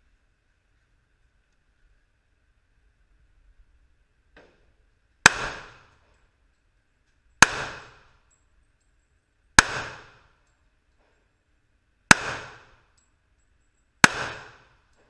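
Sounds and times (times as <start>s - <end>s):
gunshots: 5.2s - 5.9s, 7.4s - 8.1s, 9.6s - 10.3s, 12.1s - 12.8s, 14.0s - 14.8s.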